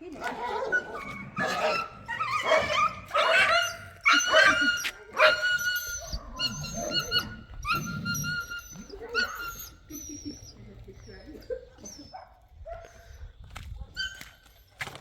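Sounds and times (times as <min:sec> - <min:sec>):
dog whining and yelping: 0:00.5 - 0:12.3, 0:13.9 - 0:14.4.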